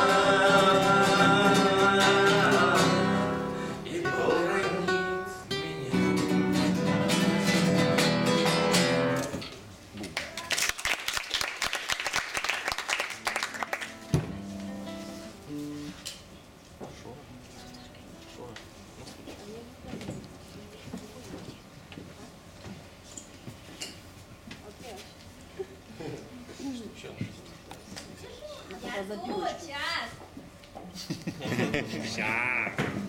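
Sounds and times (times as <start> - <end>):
acoustic guitar strumming: 0.0 - 9.5, 13.6 - 16.1
audience applauding: 10.2 - 14.0.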